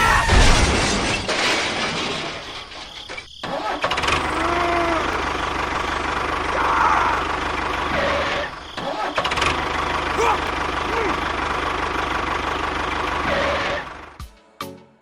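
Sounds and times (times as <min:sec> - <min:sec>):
small tractor engine running: 0:03.5 - 0:14.2.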